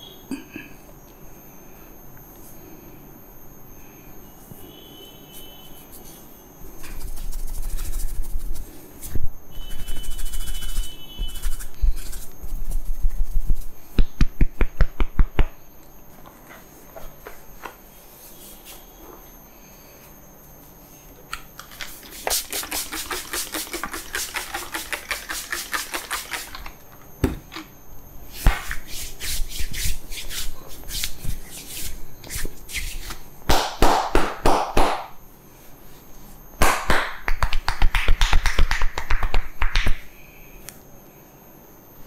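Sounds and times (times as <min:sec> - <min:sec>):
hands slapping head and shoulders: 0:14.0 - 0:15.6, 0:28.4 - 0:29.9, 0:32.3 - 0:35.1, 0:36.6 - 0:40.1.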